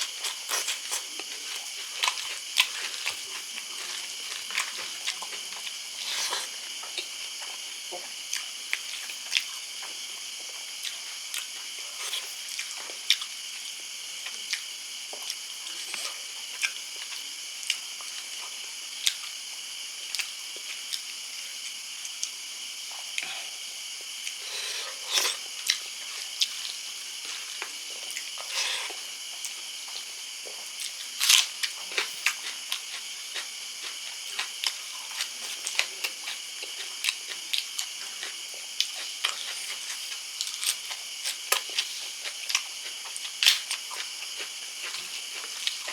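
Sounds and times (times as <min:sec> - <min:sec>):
person chewing: 0:00.0 - 0:09.6, 0:24.0 - 0:45.9.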